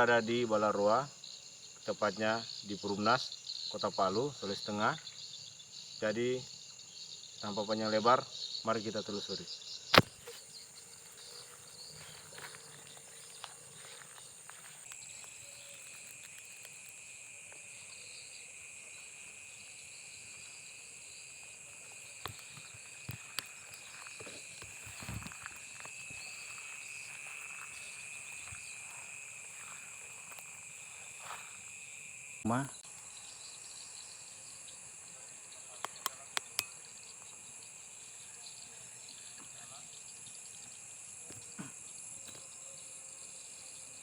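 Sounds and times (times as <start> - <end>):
high-pitched insect trilling: 0.0 - 44.0
lower-pitched insect trill: 0.0 - 44.0.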